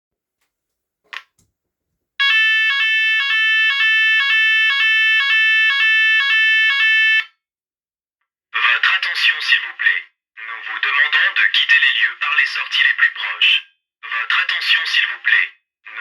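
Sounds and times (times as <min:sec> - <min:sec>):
fire alarm pulsing tone: 0:02.2 - 0:07.4.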